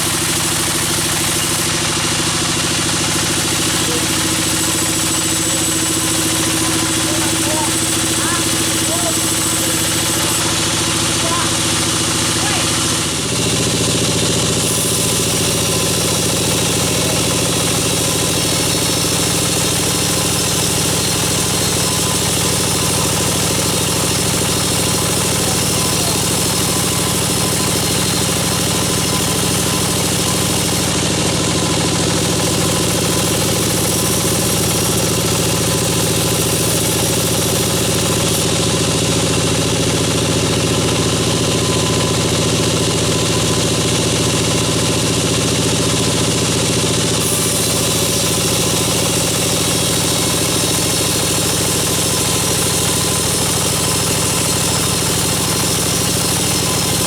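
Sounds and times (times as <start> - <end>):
sawmill machine drone with hiss: 0.0 - 57.0.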